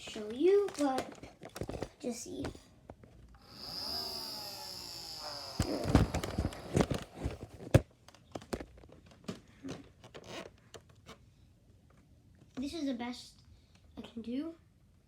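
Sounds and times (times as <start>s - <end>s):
toy blaster clacks and thumps: 0.3s - 2.6s, 3.6s - 9.4s
toy blaster high whine: 3.4s - 7.3s.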